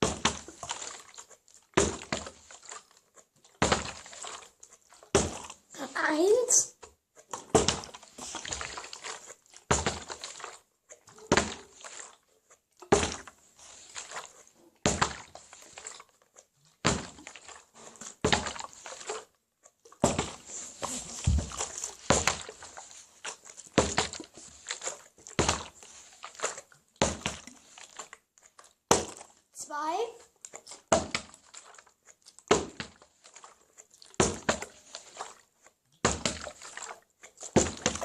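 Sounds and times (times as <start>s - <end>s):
plastic bottle landing thunk: 0.0s - 0.4s, 1.8s - 2.2s, 3.6s - 4.0s, 5.1s - 5.5s, 7.4s - 8.0s, 9.7s - 10.1s, 11.3s - 11.6s, 12.9s - 13.3s, 14.8s - 15.2s, 16.8s - 17.2s, 20.0s - 22.5s, 23.8s - 24.2s, 25.4s - 25.7s, 27.0s - 27.4s, 28.9s - 29.2s, 30.9s - 31.3s, 32.5s - 33.0s, 34.2s - 34.6s, 36.0s - 36.4s, 37.6s - 38.0s.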